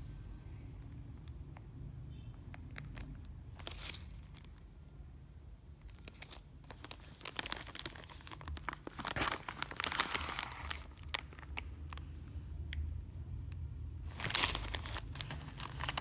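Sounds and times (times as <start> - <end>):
packaging crinkling and tearing: 2.7 - 4.6, 5.8 - 12.1, 14.1 - 16.0.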